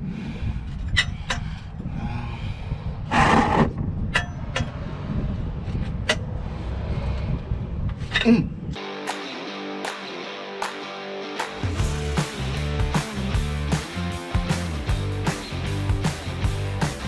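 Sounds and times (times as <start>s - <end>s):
steady low rumble: 0.0s - 8.8s
tool scraping: 3.1s - 3.9s.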